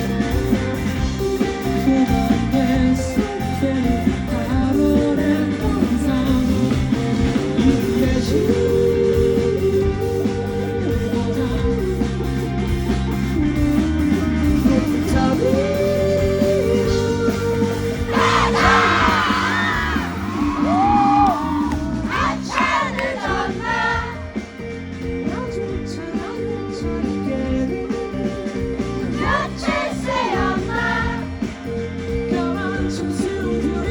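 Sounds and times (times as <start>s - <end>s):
live rock band with singing: 0.0s - 33.9s
high yelling voices: 17.8s - 24.3s, 29.0s - 31.4s.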